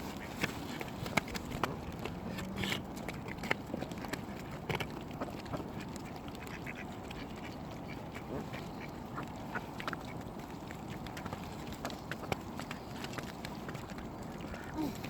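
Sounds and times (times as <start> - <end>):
ducks quacking: 5.5 - 10.2.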